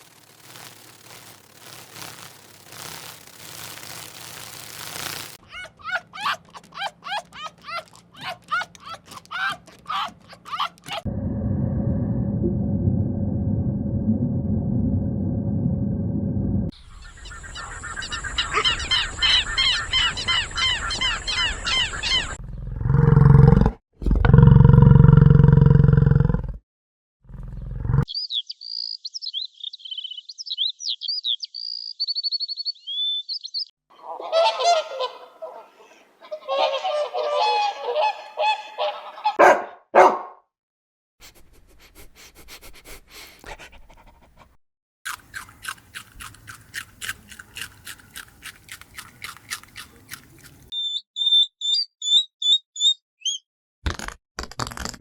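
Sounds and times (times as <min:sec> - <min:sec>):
high quick bird chirping: 0:16.7 - 0:22.4, 0:28.1 - 0:33.7, 0:47.5 - 0:53.4
waterfowl honking: 0:16.9 - 0:22.4, 0:34.0 - 0:35.7, 0:36.3 - 0:39.5.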